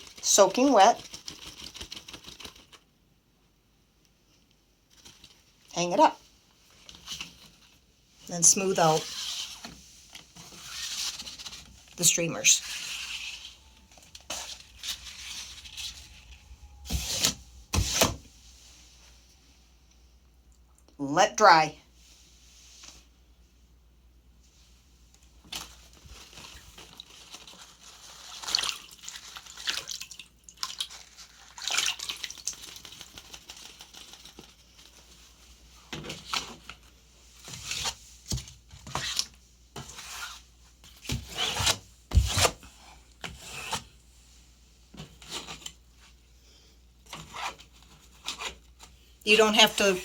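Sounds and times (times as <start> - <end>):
hands rubbing wet ribbon: 26.3 - 35.5.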